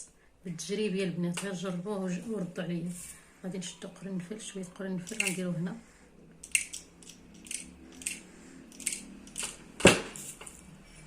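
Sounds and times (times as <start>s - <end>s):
cloves clicking into bottle: 6.4s - 9.6s.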